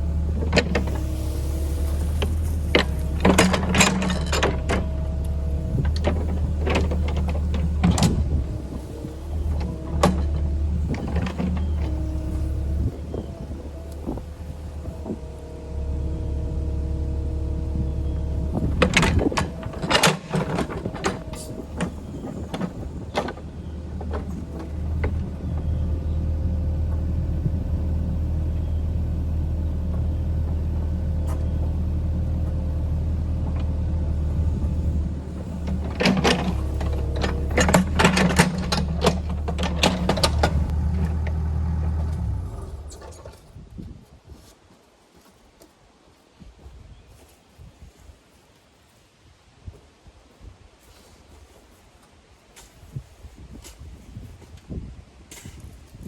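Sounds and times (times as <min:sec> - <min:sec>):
engine droning: 0:00.0 - 0:43.9.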